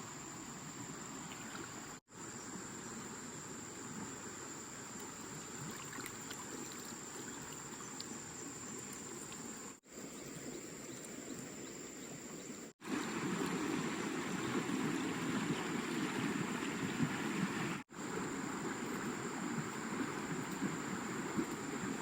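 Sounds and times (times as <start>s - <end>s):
rushing stream water: 4.8s - 11.6s, 12.8s - 22.0s.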